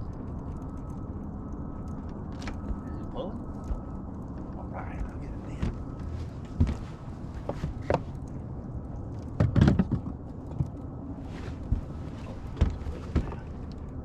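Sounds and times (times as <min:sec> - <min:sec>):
steady low rumble: 0:00.0 - 0:14.0
knocks and thumps on boat: 0:05.0 - 0:08.1, 0:09.4 - 0:10.2, 0:11.6 - 0:13.5.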